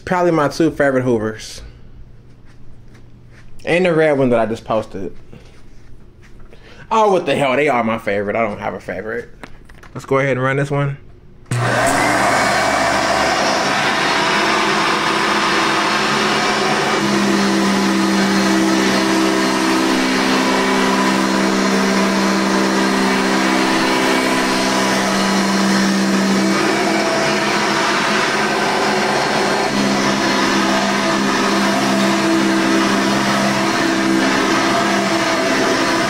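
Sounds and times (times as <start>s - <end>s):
deeper hum: 11.5s - 36.0s
vacuum cleaner motor whining: 11.5s - 36.0s.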